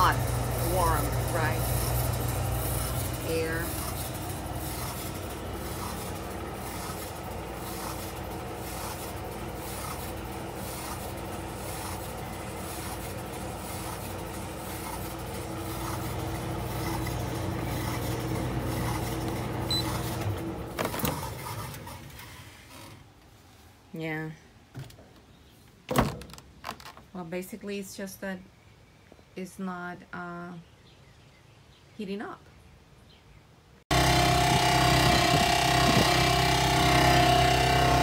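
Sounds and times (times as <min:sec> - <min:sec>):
tumble dryer motor hum: 0:00.0 - 0:23.0, 0:33.9 - 0:38.0
turning drum and fan: 0:00.0 - 0:23.0, 0:33.9 - 0:38.0.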